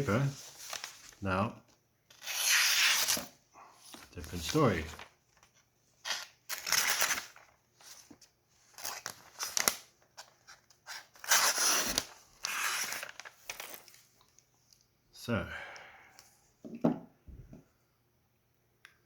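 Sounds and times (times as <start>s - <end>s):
knife slicing paper: 2.2s - 3.3s.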